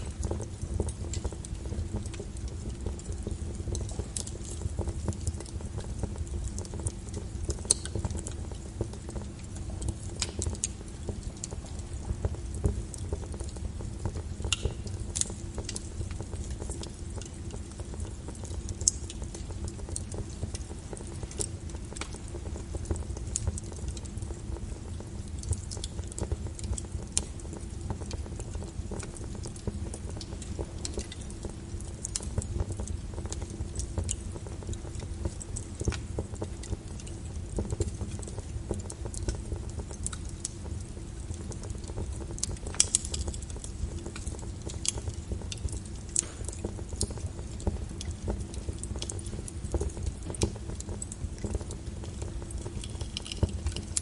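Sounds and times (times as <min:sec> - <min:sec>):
fire crackling in a fireplace: 0:00.0 - 0:54.0.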